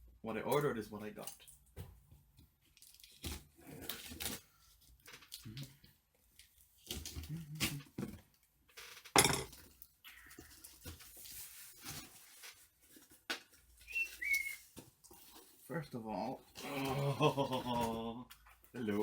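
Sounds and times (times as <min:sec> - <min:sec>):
packaging rustling: 0:10.4 - 0:15.7.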